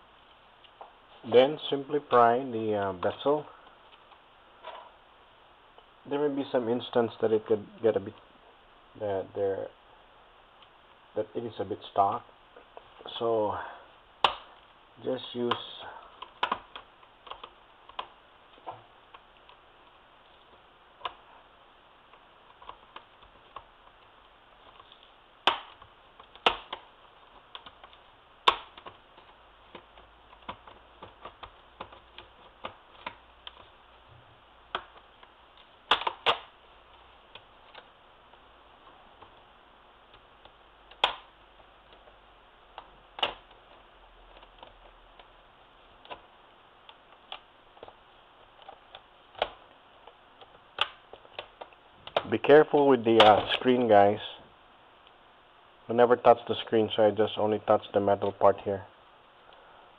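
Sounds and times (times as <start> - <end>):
plastic clips snapping: 16.2 - 19.6, 22.5 - 33.7, 34.7 - 36.5, 40.1 - 42.0, 42.8 - 43.7, 46.9 - 53.7.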